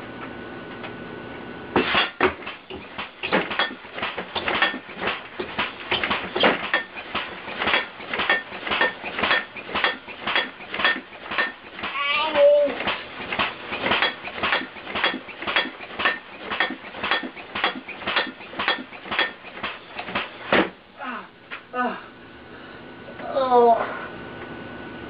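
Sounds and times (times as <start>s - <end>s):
steady hum: 0.0s - 25.0s
rapid metallic clanging: 1.8s - 12.1s, 12.8s - 20.4s.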